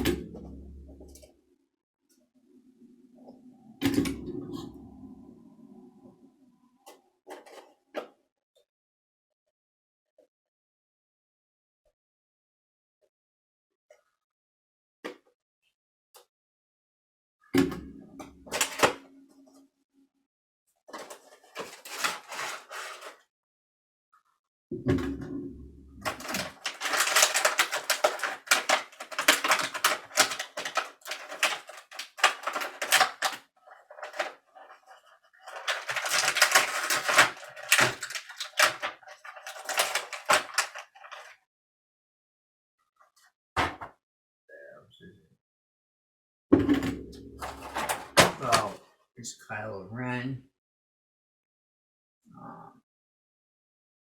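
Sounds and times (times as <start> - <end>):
rustling packaging: 21.0 - 23.2, 26.0 - 41.4.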